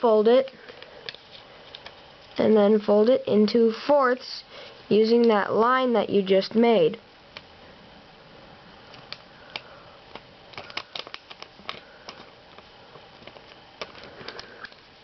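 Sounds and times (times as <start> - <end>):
paper crinkling and creasing: 10.1 - 14.9.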